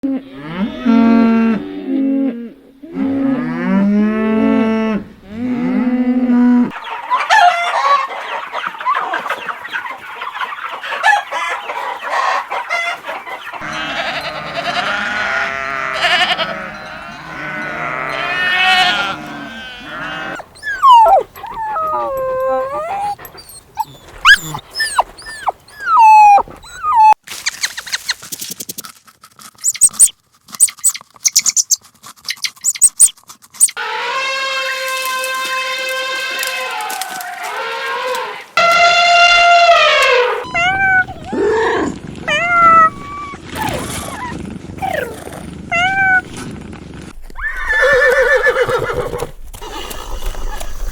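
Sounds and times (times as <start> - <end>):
farm animals squealing: 6.7 - 27.2, 29.6 - 31.8, 32.4 - 46.5, 47.3 - 49.8
cow mooing: 13.6 - 26.4.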